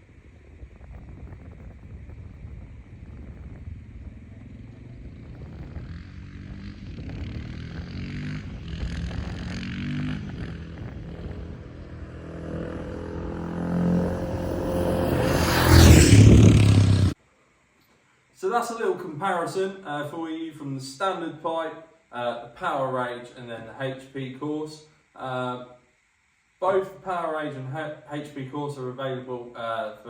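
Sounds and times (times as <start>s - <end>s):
motorcycle engine revving: 2.4s - 17.2s.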